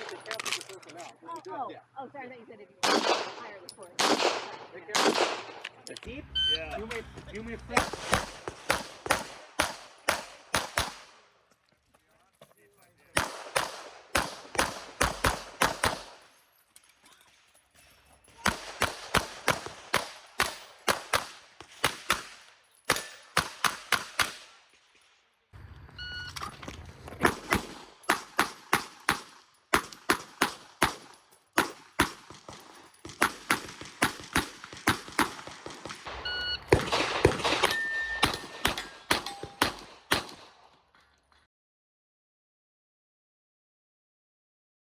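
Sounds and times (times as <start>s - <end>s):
pistol shots: 2.8s - 6.2s, 6.8s - 11.3s, 13.2s - 16.3s, 18.4s - 24.8s, 27.2s - 40.8s
shot timer beep: 6.2s - 6.8s, 25.8s - 26.5s, 36.2s - 36.7s, 37.7s - 38.5s.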